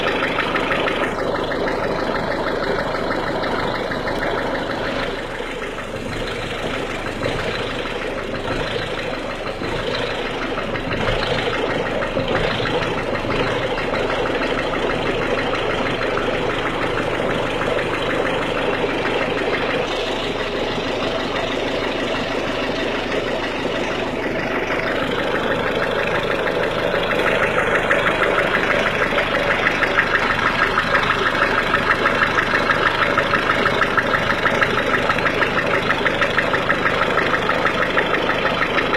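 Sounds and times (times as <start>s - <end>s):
diesel engine idling with knock: 0.0s - 38.9s.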